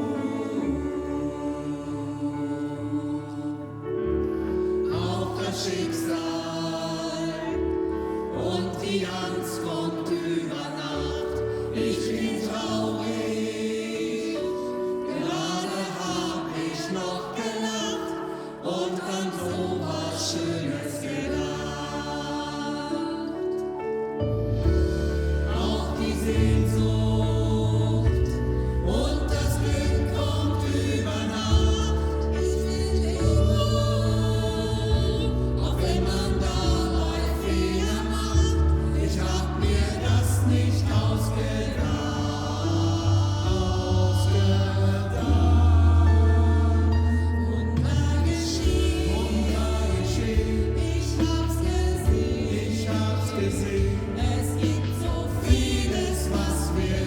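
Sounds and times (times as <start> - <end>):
choir singing: 0.0 - 57.0.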